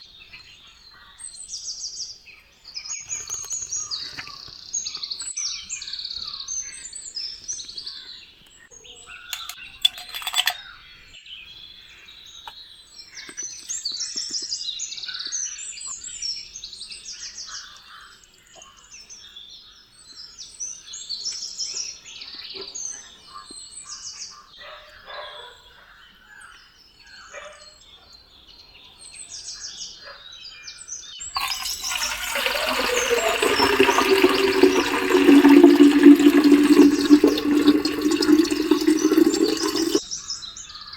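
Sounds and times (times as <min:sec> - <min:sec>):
running water rushing: 0:31.3 - 0:40.0.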